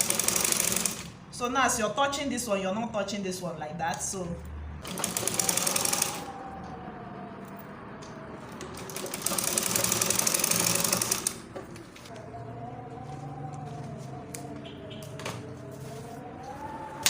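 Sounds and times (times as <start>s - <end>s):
sewing machine stitching: 0.0s - 1.1s, 4.8s - 6.3s, 8.4s - 11.7s
sewing machine hum: 0.0s - 1.2s, 4.8s - 6.5s, 8.3s - 12.3s.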